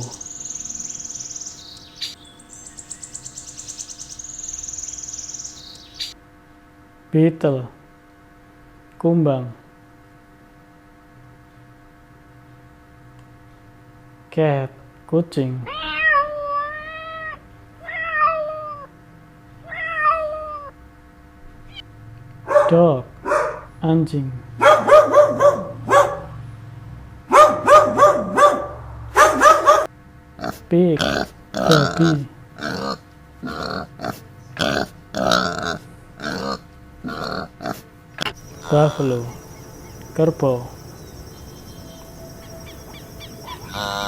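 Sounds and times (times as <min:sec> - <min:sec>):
high-pitched chirping trill: 0:00.0 - 0:06.2, 0:38.3 - 0:44.0
faint steady hum: 0:00.0 - 0:09.0, 0:38.1 - 0:44.0
cat meowing: 0:15.7 - 0:18.9, 0:19.6 - 0:20.7.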